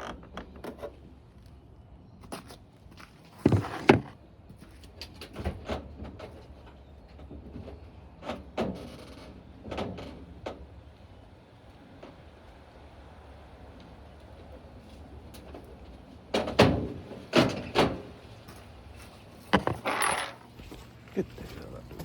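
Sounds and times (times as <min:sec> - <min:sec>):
sheet metal knocks and scrapes: 0:19.5 - 0:20.4
metal clanks: 0:19.5 - 0:20.6.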